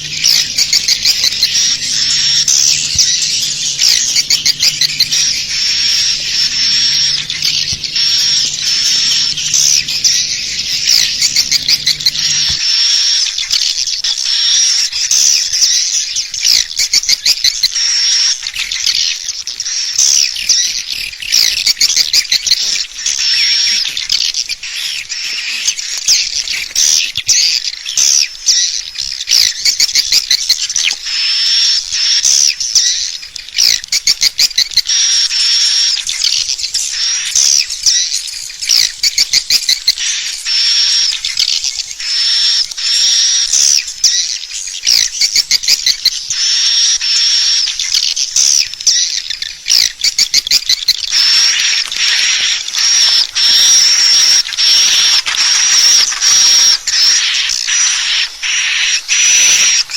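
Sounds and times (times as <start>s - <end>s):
low steady hum: 0.0s - 13.4s
swiftlet chirps and clicking trills: 0.0s - 13.7s, 50.0s - 59.9s.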